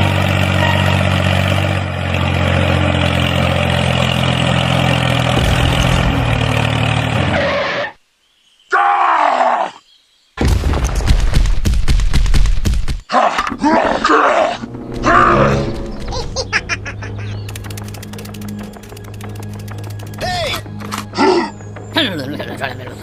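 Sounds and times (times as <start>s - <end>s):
tractor engine running: 0.0s - 7.4s, 14.6s - 23.0s.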